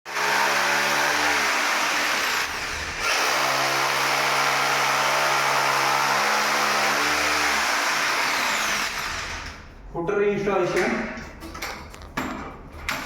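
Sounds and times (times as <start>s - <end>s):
electric power drill running: 0.1s - 9.5s.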